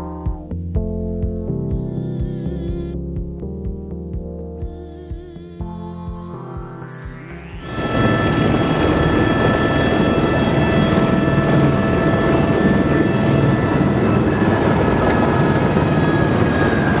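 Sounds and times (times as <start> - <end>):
helicopter rotor drone: 7.6 - 17.0
high turbine whine: 7.6 - 17.0.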